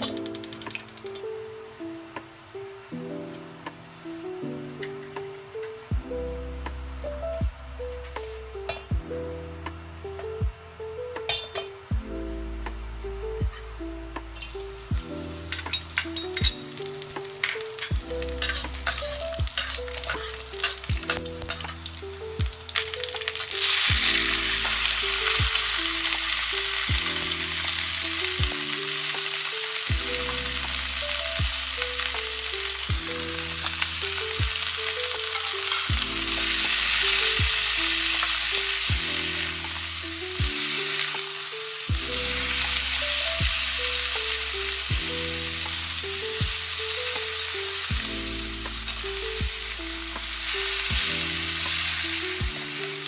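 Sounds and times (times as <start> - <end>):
crackles and clicks of stir-frying: 0.0 - 1.4, 6.5 - 10.4, 11.2 - 53.0
food sizzling in a wok: 14.3 - 53.0.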